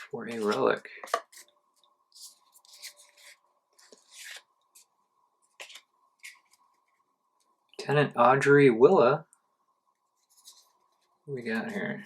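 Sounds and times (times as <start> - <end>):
trading cards rustling: 0.0 - 1.5, 2.1 - 4.9.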